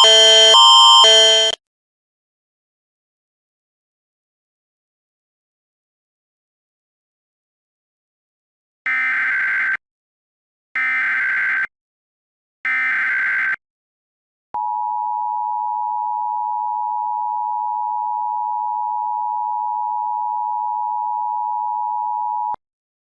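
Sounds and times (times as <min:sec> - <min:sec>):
two-tone attention signal: 0:00.0 - 0:01.6.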